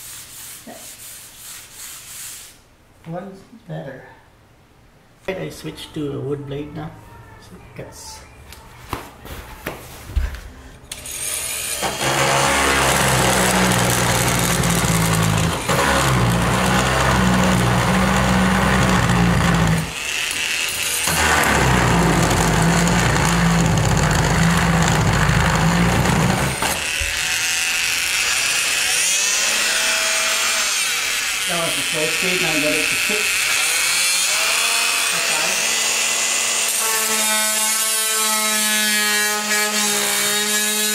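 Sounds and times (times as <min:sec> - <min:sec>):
oscillating multi-tool cutting wood: 0:10.9 - 0:40.9.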